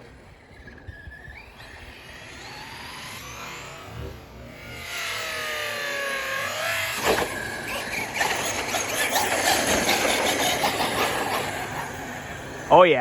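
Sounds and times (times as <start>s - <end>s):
rc car motor whine: 0.0s - 12.8s
tyres rattling on gravel: 6.9s - 13.0s.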